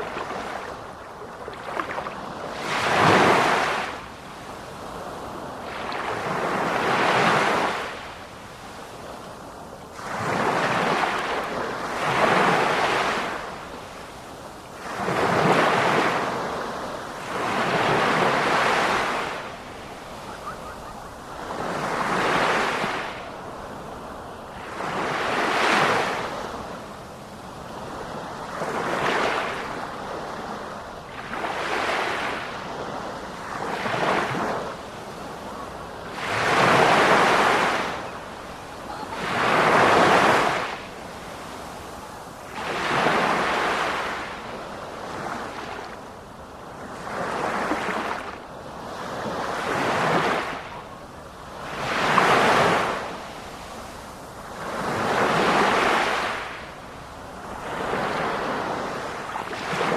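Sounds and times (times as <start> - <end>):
waves breaking: 14.7 - 26.8, 27.8 - 46.0, 46.9 - 59.9.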